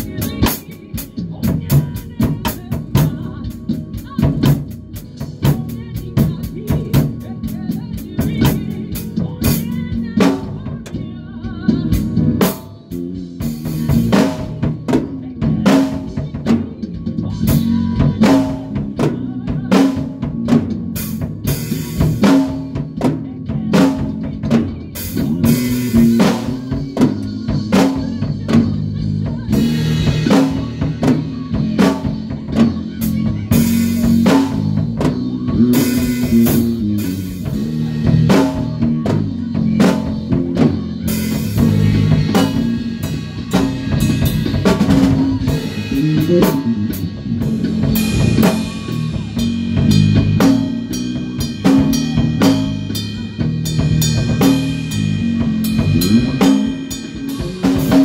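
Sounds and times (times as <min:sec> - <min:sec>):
drum kit beat: 0:00.0 - 0:58.0
low bass guitar notes: 0:32.4 - 0:58.0.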